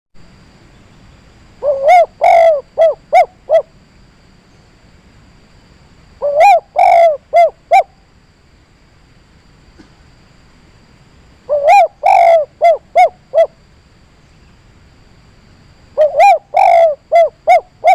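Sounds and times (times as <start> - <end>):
dove cooing: 1.6 - 3.7, 6.2 - 7.9, 11.5 - 13.6, 16.0 - 17.9.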